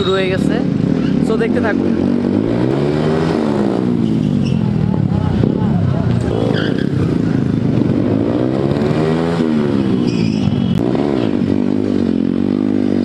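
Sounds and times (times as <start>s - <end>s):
motorcycle engine revving: 0.0s - 13.0s.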